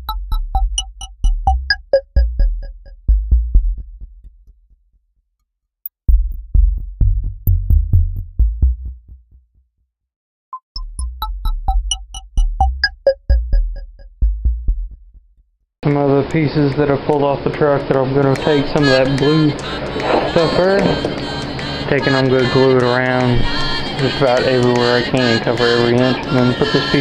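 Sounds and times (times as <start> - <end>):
electronic music: 0.0 - 3.1, 10.6 - 14.1.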